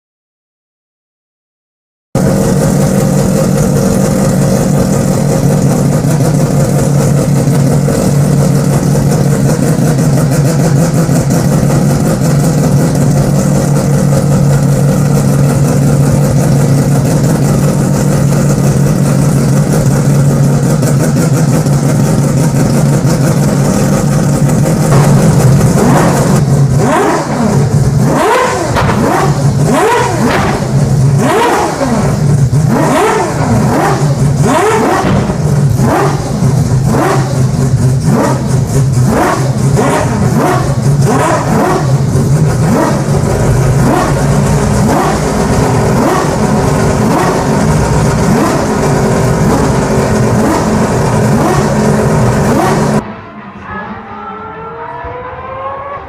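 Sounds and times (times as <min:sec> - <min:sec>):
rotary race engine revving: 0:02.2 - 0:56.0.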